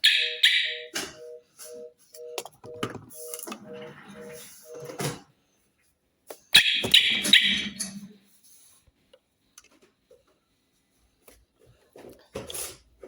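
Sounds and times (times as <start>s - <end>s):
two-tone electronic beep: 0.0s - 5.0s.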